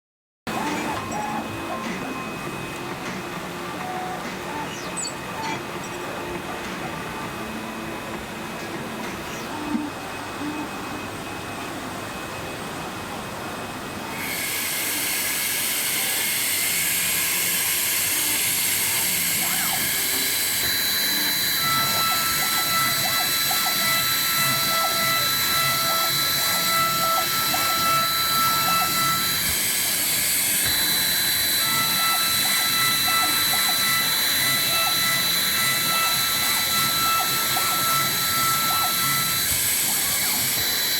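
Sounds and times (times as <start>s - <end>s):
high whining motor: 0.5s - 40.9s.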